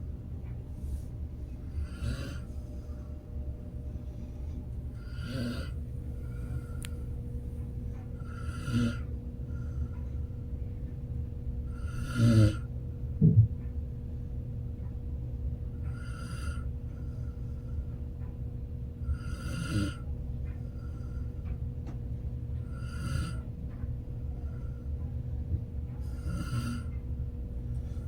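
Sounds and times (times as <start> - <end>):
person snoring: 1.7 - 2.5, 5.0 - 6.4, 8.3 - 9.0, 11.8 - 12.6, 19.2 - 20.0, 26.1 - 26.9
loud low snort: 8.4 - 9.0.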